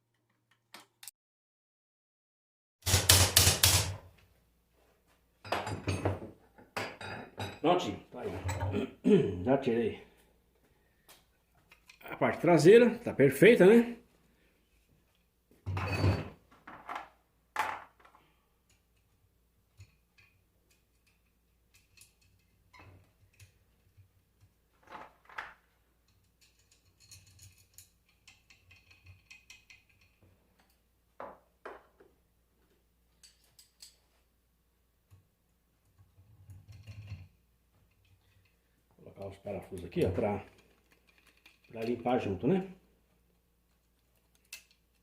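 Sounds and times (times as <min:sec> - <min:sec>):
metal parts clinking: 0:26.1 - 0:30.8, 0:40.3 - 0:42.1.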